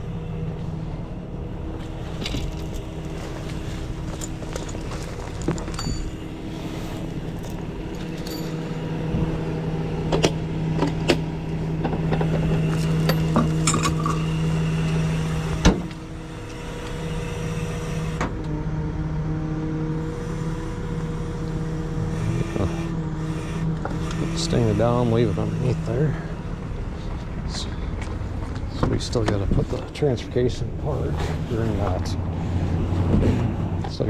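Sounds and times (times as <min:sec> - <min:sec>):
tow truck humming: 0:00.0 - 0:34.0
sharp metal clanks: 0:02.2 - 0:09.4, 0:12.6 - 0:14.4.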